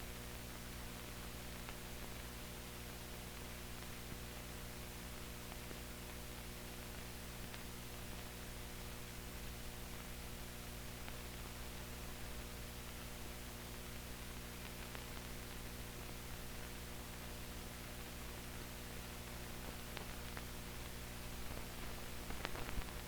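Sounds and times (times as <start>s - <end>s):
faint ticks: 21.5s - 23.0s.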